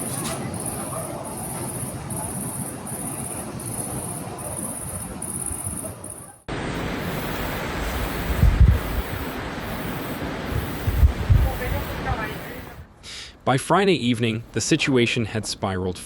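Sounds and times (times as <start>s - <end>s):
insects chirping: 0.0s - 12.8s
rushing noise: 6.5s - 12.9s.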